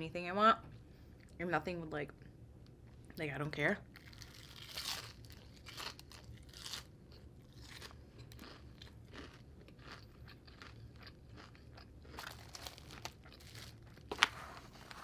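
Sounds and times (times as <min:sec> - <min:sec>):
close chewing crunches: 0:04.0 - 0:14.1.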